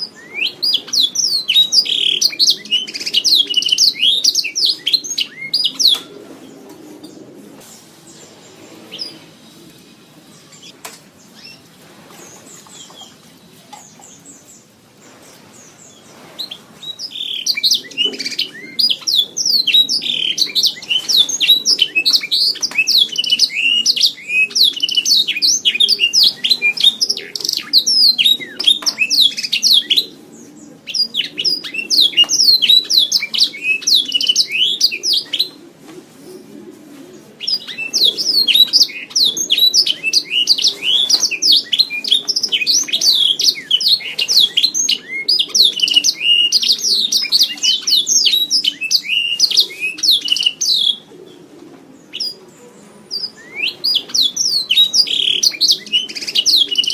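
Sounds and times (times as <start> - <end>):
canary singing trills: 0.0 - 6.2, 15.5 - 35.6, 37.4 - 51.3, 53.1 - 56.9.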